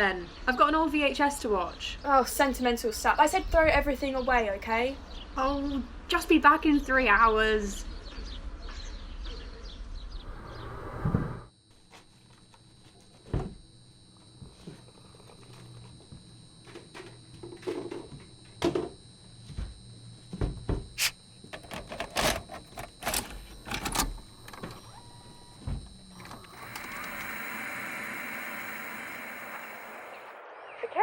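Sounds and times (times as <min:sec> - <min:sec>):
objects being handled: 0:20.9 - 0:26.4.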